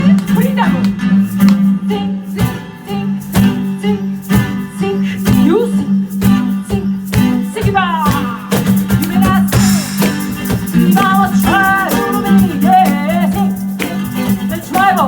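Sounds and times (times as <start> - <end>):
live band playing soul music: 0.0 - 15.0
sliding guitar lines: 0.0 - 15.0.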